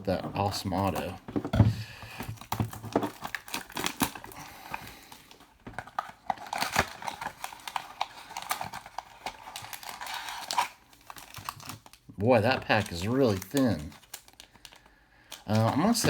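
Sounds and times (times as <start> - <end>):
cards clicking and rustling: 0.1 - 16.0
wrapper tearing and crinkling: 2.4 - 5.0, 5.8 - 16.0.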